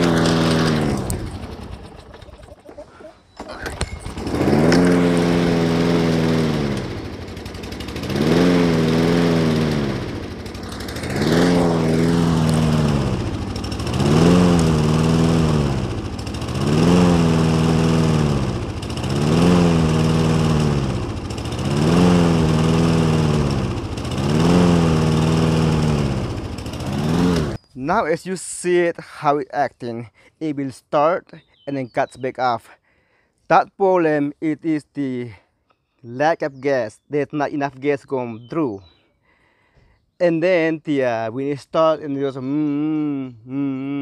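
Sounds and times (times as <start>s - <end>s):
lawn mower engine surging: 0.0s - 27.6s.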